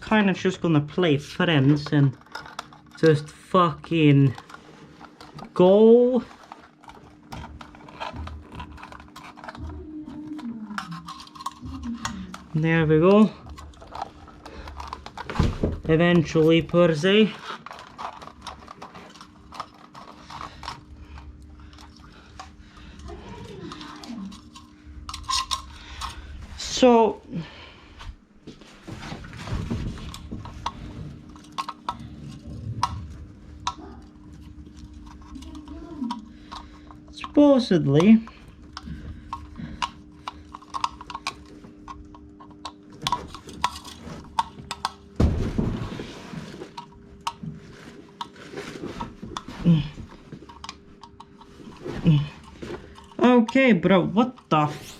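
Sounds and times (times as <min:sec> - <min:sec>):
faint steady hum: 0:00.0 - 0:54.9
hardware and cable clicks: 0:06.4 - 0:26.2, 0:38.0 - 0:45.1.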